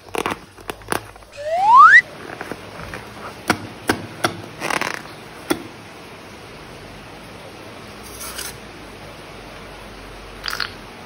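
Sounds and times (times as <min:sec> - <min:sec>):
rising squeal: 0:01.4 - 0:02.0.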